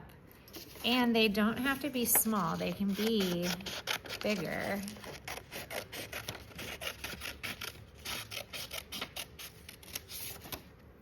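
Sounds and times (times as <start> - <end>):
cardboard and paper scratching: 1.9 - 10.6.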